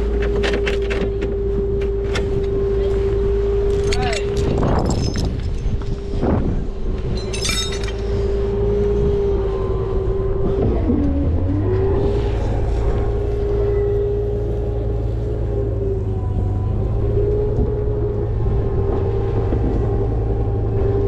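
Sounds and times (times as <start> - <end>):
truck engine whining: 0.0 - 21.0
metallic clink-jingle: 7.1 - 8.1.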